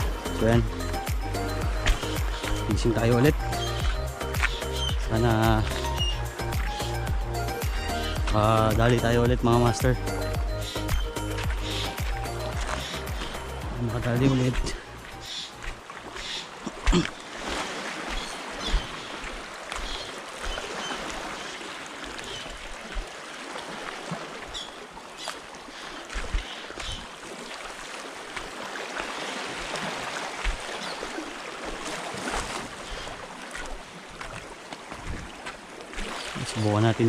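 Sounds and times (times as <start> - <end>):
sea water lapping: 0.0 - 37.0
wind on microphone: 34.9 - 35.4.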